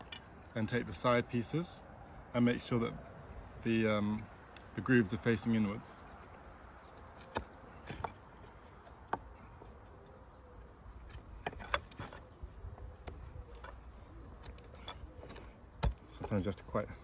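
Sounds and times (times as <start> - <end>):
wooden frame parts knocking: 6.9 - 9.8, 11.0 - 16.5.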